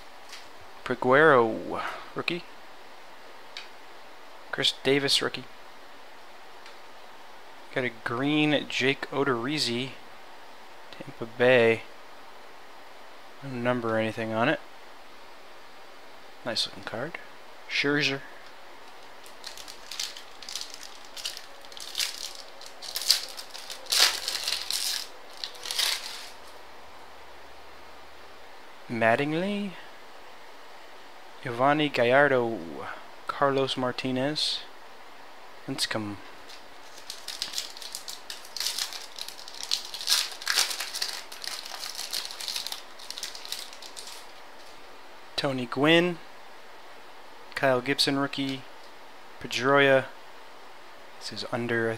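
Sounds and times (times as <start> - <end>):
pack wrapping crinkling: 18.9 - 26.6, 36.4 - 44.8
trading cards rustling: 18.9 - 26.6, 36.5 - 44.8.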